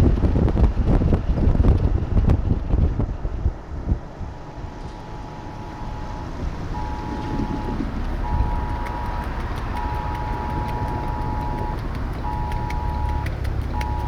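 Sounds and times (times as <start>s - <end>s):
vehicle cabin rumble: 0.0s - 14.0s
phone alert tones pulsing: 5.0s - 14.0s.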